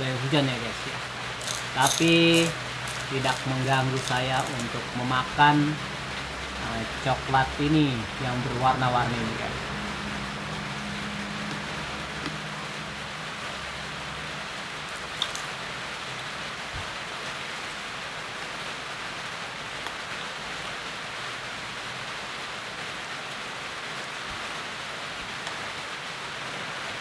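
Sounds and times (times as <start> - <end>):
steady rain falling: 0.0 - 27.0.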